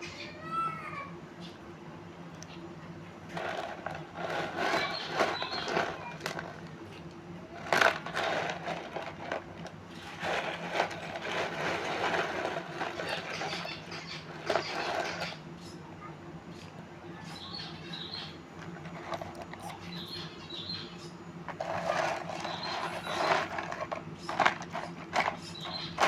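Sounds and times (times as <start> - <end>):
small stones clicking and scraping: 3.3 - 6.5, 7.6 - 13.8, 21.5 - 26.0.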